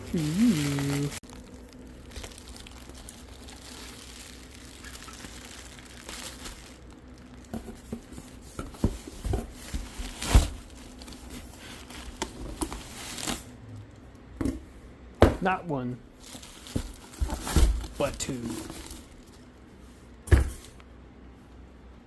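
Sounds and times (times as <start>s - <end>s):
packing material crumpling: 0.0s - 8.4s, 9.5s - 13.5s, 16.2s - 19.5s.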